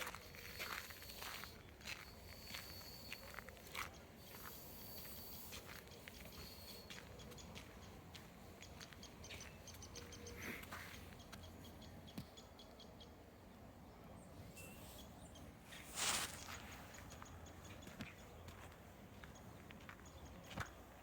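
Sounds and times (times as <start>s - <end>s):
small birds chirping: 0.0s - 21.0s
loud short crunch: 15.8s - 16.8s.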